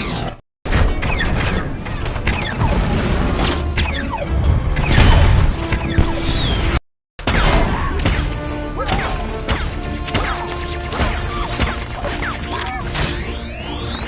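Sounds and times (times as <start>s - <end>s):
metallic clanks and ratcheting: 1.8s - 2.6s, 3.3s - 3.8s, 5.5s - 6.0s.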